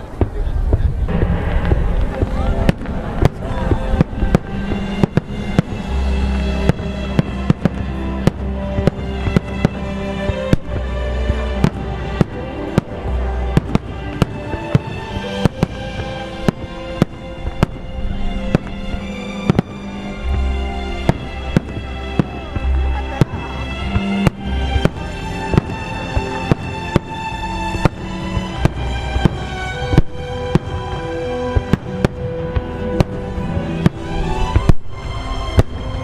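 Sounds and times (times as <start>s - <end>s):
fireworks bursting: 0.0s - 36.0s.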